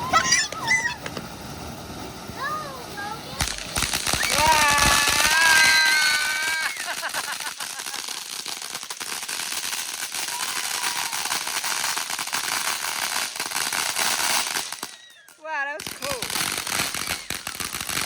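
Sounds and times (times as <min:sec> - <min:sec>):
firework crackling: 0:00.0 - 0:18.0.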